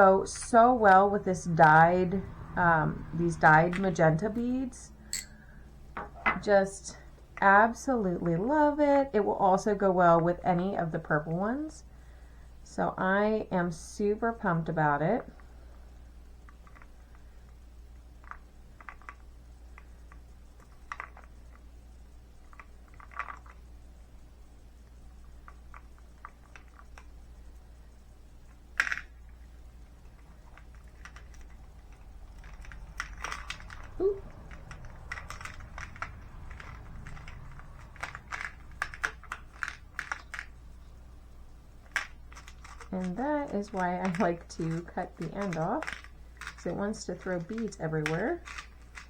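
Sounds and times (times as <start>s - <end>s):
glass beads clicking: 30.2s - 40.7s, 41.8s - 49.0s.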